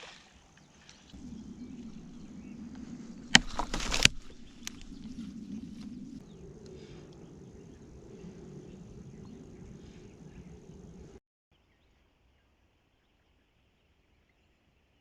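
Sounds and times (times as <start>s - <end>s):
faint low hum: 1.1s - 11.2s.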